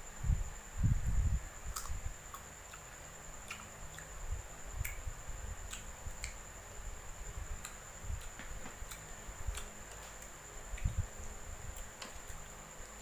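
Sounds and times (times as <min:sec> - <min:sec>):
faint high-pitched whine: 0:00.0 - 0:13.0
crunchy chewing: 0:01.7 - 0:04.2, 0:07.6 - 0:11.0.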